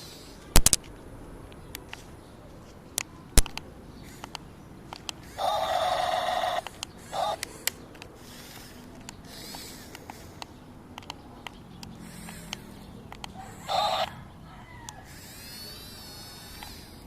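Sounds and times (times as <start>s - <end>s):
chicken calling: 5.2s - 10.4s, 11.6s - 17.0s
light clicks: 6.6s - 13.4s.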